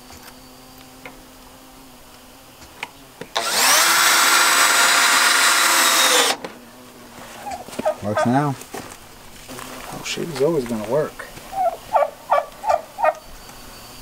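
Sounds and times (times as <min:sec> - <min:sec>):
power drill running: 0:03.3 - 0:06.5.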